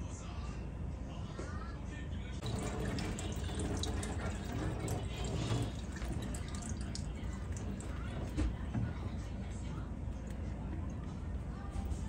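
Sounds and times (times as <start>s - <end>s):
tap water running: 2.4s - 12.0s.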